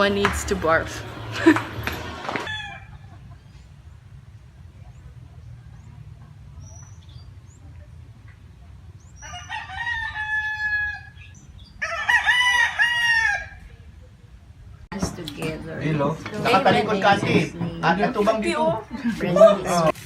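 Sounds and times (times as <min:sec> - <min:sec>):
rooster crowing: 0:02.2 - 0:03.2, 0:09.2 - 0:11.2, 0:11.8 - 0:13.6.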